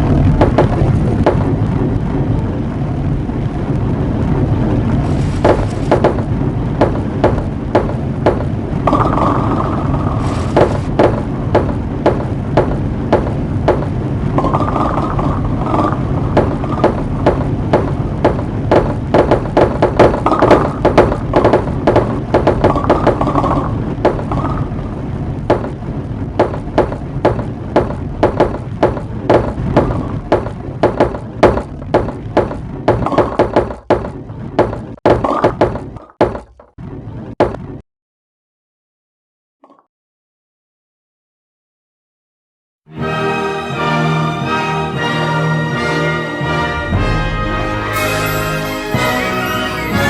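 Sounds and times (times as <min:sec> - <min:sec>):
steady low rumble: 0:00.0 - 0:33.1.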